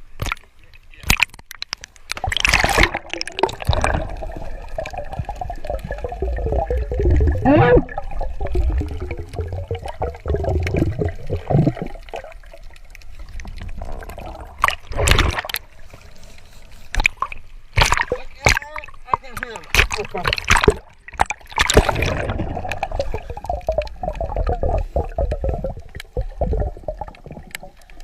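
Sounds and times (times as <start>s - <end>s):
water gurgling and bubbling: 2.2s - 15.8s, 19.7s - 28.0s.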